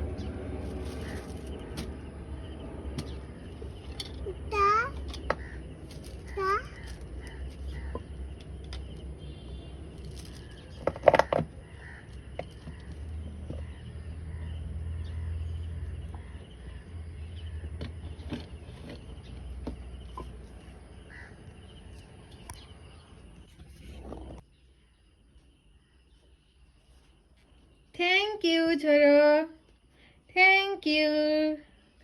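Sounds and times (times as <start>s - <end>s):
low rumble: 0.0s - 9.2s
crow cawing: 6.2s - 8.1s, 11.6s - 12.9s, 21.1s - 21.4s.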